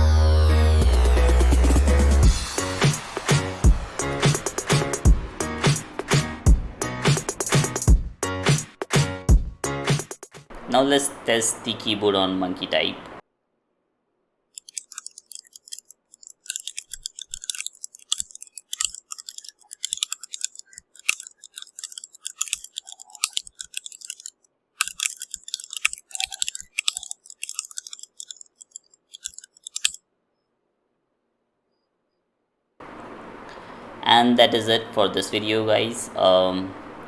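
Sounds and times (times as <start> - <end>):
mechanical keyboard typing: 14.6 - 30.0.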